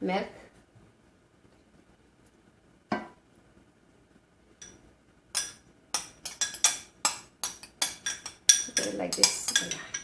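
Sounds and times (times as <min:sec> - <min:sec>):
spoon clinking against dish: 0:04.6 - 0:10.0.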